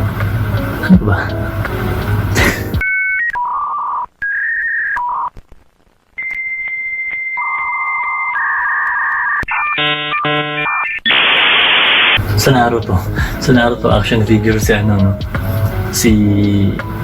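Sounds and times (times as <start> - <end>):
static hiss: 5.3 - 7.4, 9.9 - 17.0
electronic beep tones: 6.2 - 11.4
short harsh buzzes: 9.8 - 12.2.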